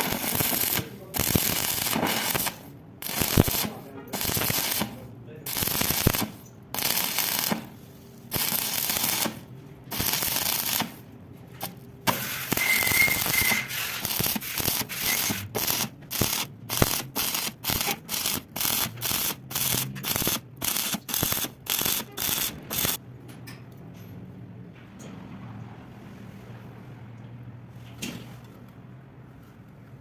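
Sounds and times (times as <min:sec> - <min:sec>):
welding arc crackling: 0:00.0 - 0:11.0, 0:11.6 - 0:23.0.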